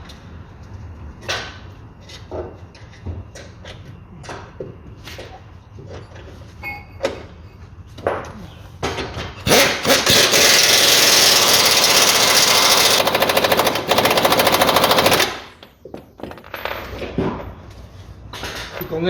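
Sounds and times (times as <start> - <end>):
impact wrench hammering: 9.4 - 15.6.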